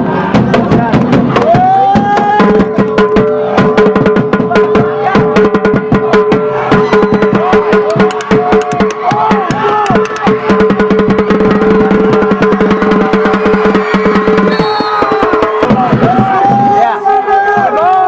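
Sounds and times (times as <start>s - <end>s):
fast busy drum beat: 0.0s - 18.0s.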